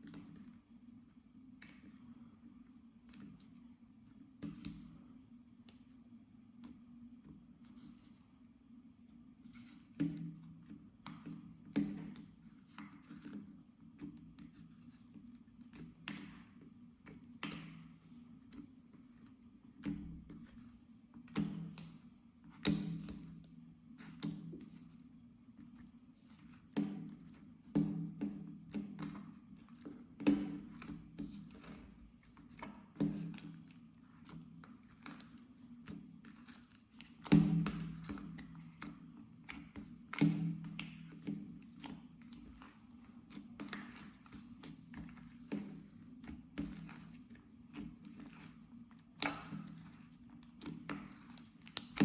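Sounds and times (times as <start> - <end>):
slime squelching: 10.6 - 52.0.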